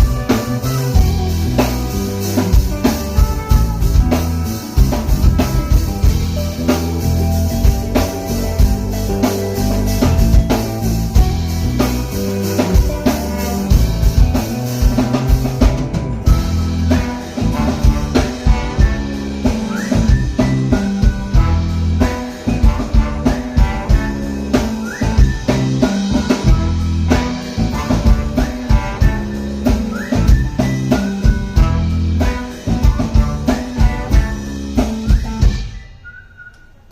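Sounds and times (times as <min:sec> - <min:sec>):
drum kit beat: 0:00.0 - 0:36.0
guitar: 0:00.0 - 0:36.8.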